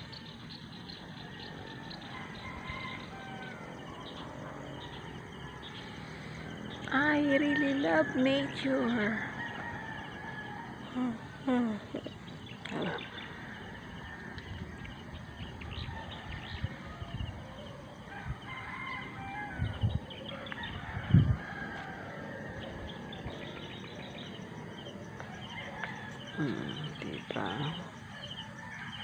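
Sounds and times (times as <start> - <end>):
small birds chirping: 0.0 - 29.0
rooster crowing: 1.2 - 5.8, 6.6 - 11.3, 13.2 - 23.5, 25.2 - 26.8, 28.2 - 29.0.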